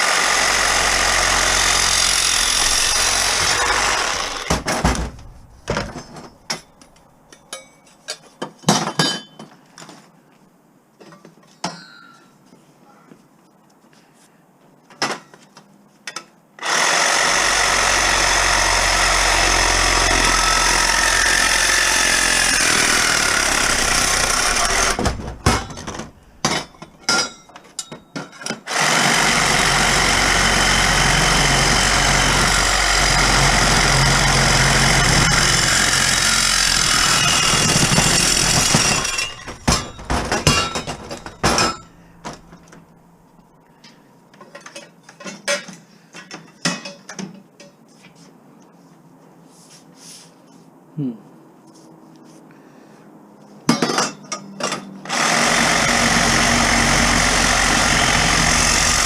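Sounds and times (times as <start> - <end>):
electric power tool running: 0.0 - 4.6, 16.6 - 25.7, 28.7 - 41.6, 55.1 - 59.0
metal knocks and clicks: 24.6 - 28.6, 37.1 - 42.8.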